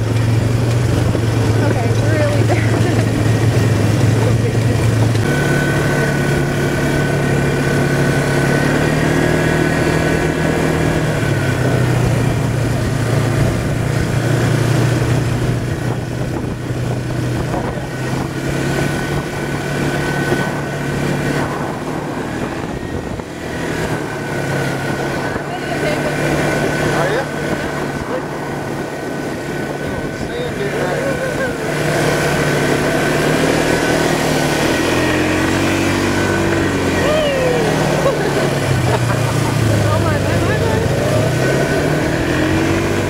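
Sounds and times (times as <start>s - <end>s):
atv engine running: 0.0s - 43.0s.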